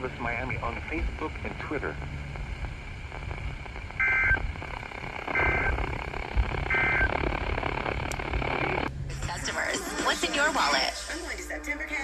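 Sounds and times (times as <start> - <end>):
two-tone digital squawks: 5.3 - 6.0, 6.6 - 7.5.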